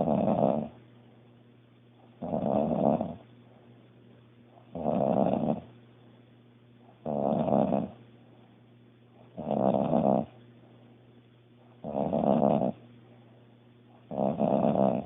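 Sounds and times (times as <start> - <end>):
quiet breaths: 0.0 - 15.0
woman snoring: 7.1 - 7.9, 11.9 - 12.8, 14.1 - 15.0.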